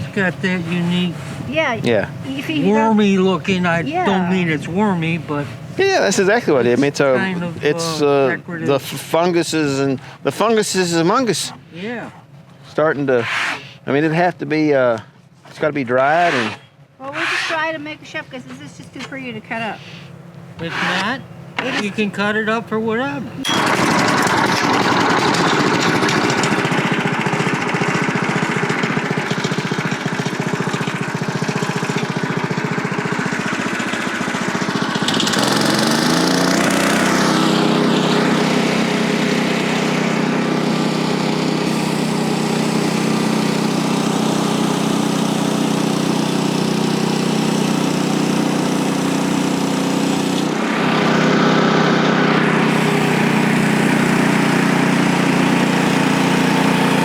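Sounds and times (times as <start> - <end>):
small gasoline engine running: 0.0 - 9.9, 23.4 - 57.0.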